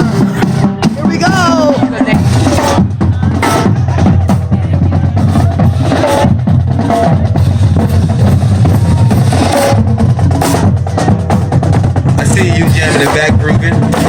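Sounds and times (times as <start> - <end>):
bass drums: 0.0 - 14.0
marching drumline cadence: 0.0 - 14.0.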